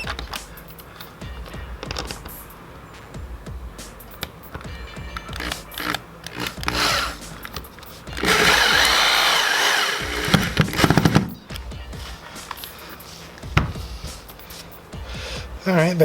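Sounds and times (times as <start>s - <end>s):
rapid rattling pulses of drill: 5.0s - 14.4s
power drill running: 5.2s - 11.4s.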